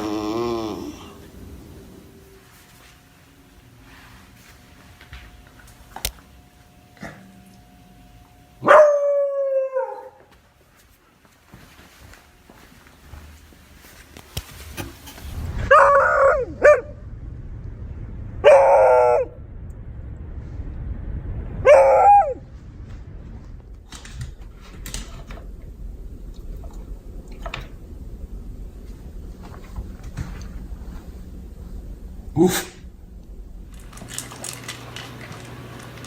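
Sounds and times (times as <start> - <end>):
dog barking: 8.6 - 10.2, 15.7 - 17.0.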